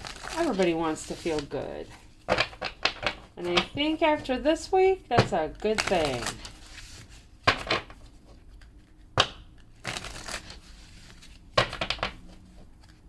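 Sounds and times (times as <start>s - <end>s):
cards rustling: 0.0s - 4.5s, 5.6s - 9.1s, 9.7s - 13.0s
cards snapping and tapping: 8.6s - 10.4s, 11.6s - 12.2s.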